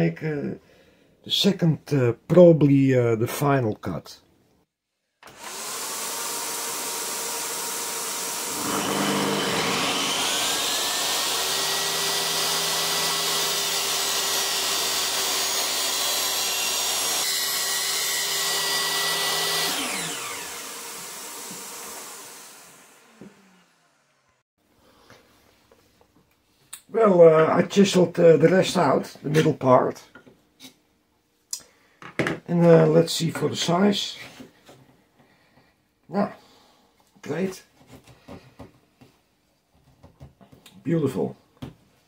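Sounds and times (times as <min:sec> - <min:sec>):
table saw motor whine: 0:05.3 - 0:24.4.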